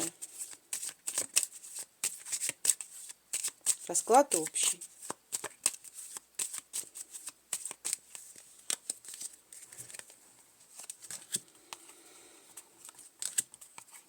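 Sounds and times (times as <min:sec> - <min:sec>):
playing cards shuffled: 0:00.1 - 0:10.2, 0:12.8 - 0:14.0.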